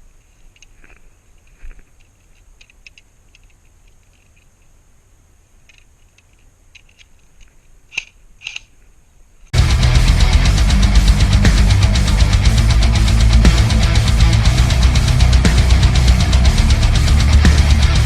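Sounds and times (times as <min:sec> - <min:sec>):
heavy metal music with electric guitars: 0:09.6 - 0:18.0.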